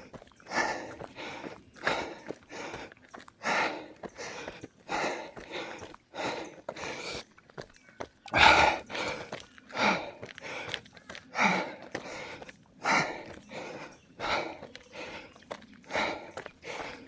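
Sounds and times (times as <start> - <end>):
footsteps on trail: 0.0 - 17.0
runner breathing heavily: 0.0 - 17.0.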